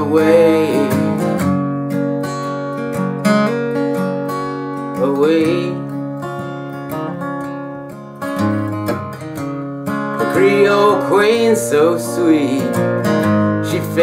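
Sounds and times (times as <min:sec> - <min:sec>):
person singing: 0:00.0 - 0:01.4, 0:04.9 - 0:06.0, 0:10.2 - 0:13.0, 0:13.6 - 0:14.0
acoustic guitar strumming: 0:00.0 - 0:14.0.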